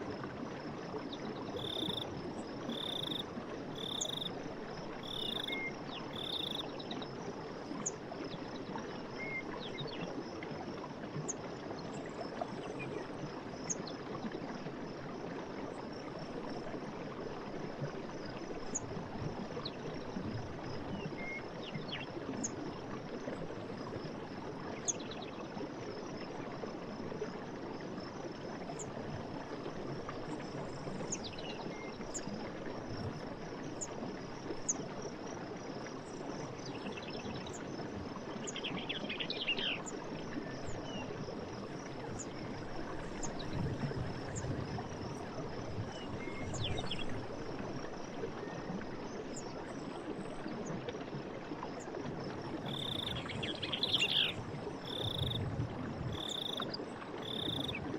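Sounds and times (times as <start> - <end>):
flowing water: 0.0 - 57.9
insects trilling: 1.6 - 2.1, 2.7 - 4.4, 5.0 - 6.7, 52.6 - 55.5, 56.1 - 57.8
bird calls: 52.7 - 55.4, 57.2 - 57.8.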